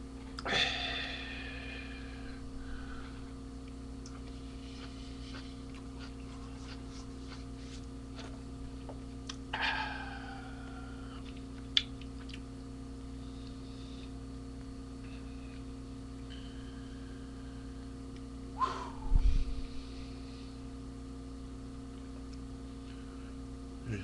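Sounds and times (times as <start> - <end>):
electrical mains hum: 0.0 - 24.0.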